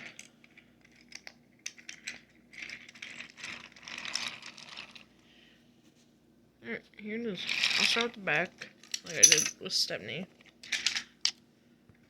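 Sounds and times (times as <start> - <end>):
toy pieces rattling and rustling: 0.0 - 5.0, 7.4 - 8.2, 8.8 - 9.5, 10.5 - 11.1
toy train pieces clicking: 0.9 - 5.0.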